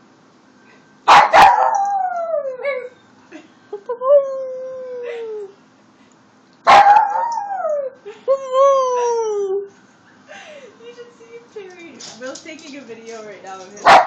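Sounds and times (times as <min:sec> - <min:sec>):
dog yelping: 0:01.1 - 0:03.0, 0:06.6 - 0:09.4
small dog howling: 0:06.7 - 0:09.7.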